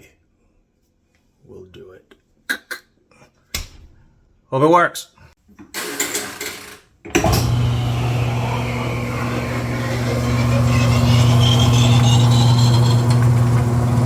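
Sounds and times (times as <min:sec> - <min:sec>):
washing machine motor humming: 0:07.2 - 0:14.0.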